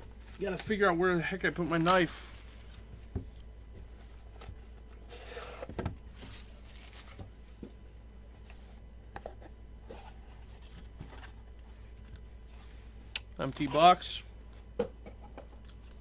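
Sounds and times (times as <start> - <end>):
wrapping rustling scrape: 1.6 - 2.8, 5.1 - 7.2.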